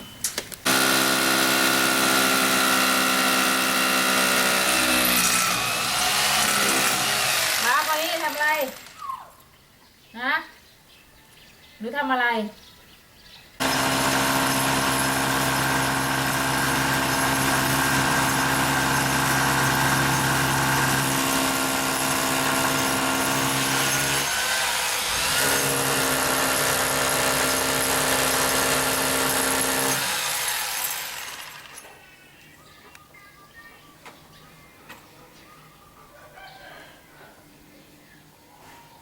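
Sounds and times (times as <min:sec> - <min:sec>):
power tool whining motor: 0:00.7 - 0:09.0, 0:13.6 - 0:31.9.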